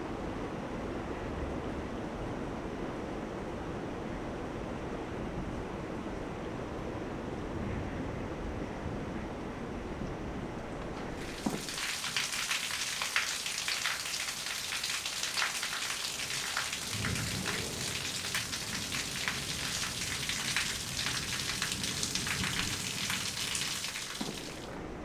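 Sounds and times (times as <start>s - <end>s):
rain falling: 10.8s - 24.8s.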